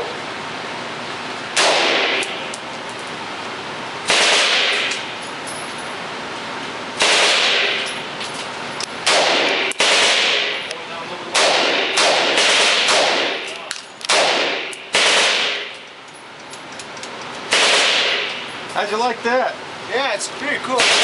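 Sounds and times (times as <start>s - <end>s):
rifle shots with echo: 1.6s - 2.4s, 4.1s - 5.0s, 7.0s - 7.8s, 9.0s - 10.7s, 11.3s - 13.5s, 14.1s - 15.8s, 17.5s - 18.3s, 20.8s - 21.0s.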